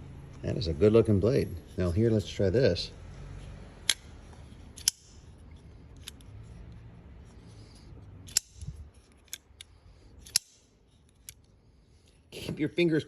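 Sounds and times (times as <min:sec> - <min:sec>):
folding knife snapping open and closed: 0:08.3 - 0:11.4.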